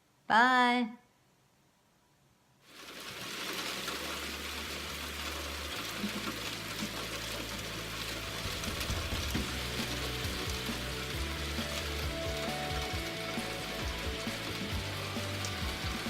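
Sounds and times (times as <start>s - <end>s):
heavy rain pouring: 2.7s - 16.0s
low hum: 7.0s - 13.0s.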